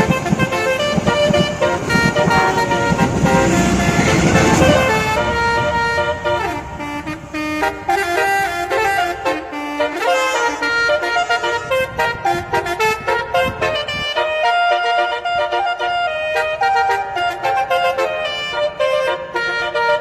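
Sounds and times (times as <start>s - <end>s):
low rhythmic pulsing: 0.0s - 13.7s
multi-tone horn melody: 0.0s - 20.0s
hiss: 10.0s - 12.1s.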